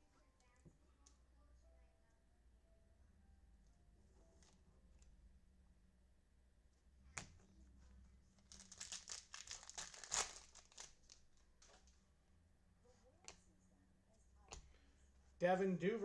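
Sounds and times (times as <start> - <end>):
wrapper tearing and crinkling: 8.4 - 11.4.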